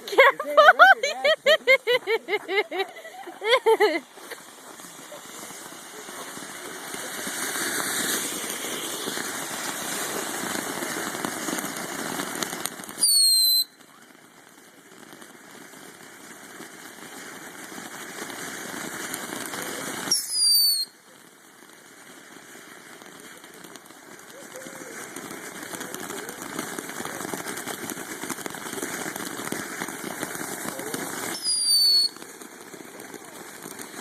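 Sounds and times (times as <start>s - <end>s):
fireworks crackling hiss: 0.0s - 34.0s
falling firework whistle: 2.8s - 14.0s, 19.0s - 21.1s, 24.2s - 34.0s.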